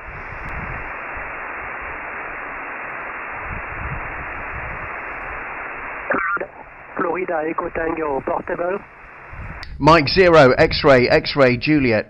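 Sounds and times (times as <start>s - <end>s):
radio receiver hiss: 0.0s - 12.0s
voice over the radio: 6.1s - 8.8s.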